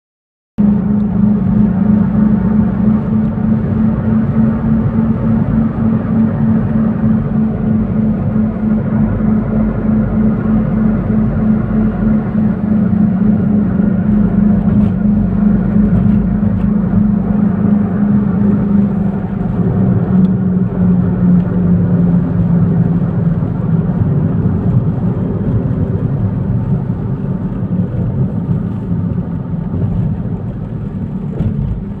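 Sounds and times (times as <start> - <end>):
car interior engine drone: 0.6 - 32.0
road rumble: 0.6 - 32.0.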